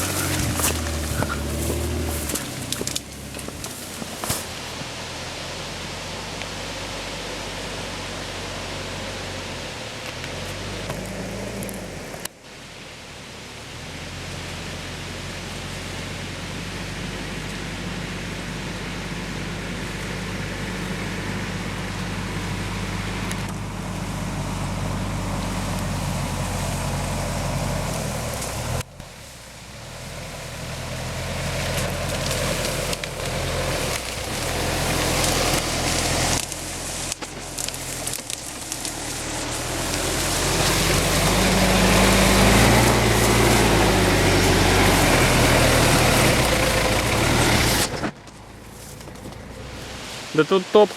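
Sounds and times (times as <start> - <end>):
suv engine running: 0.0 - 50.9
broad rushing hiss: 48.9 - 50.9.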